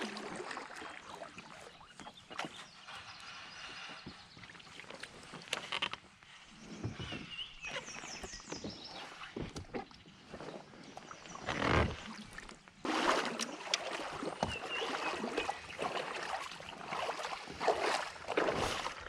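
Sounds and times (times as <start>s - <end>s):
water splashing and sloshing: 0.0s - 19.0s
fishing gear clicks and knocks: 5.3s - 6.1s.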